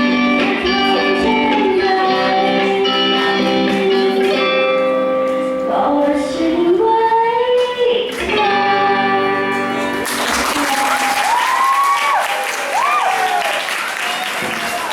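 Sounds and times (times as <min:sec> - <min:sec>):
person singing: 0:00.0 - 0:09.8
guitar accompaniment: 0:00.0 - 0:11.7
audience applause and cheering: 0:10.0 - 0:14.9.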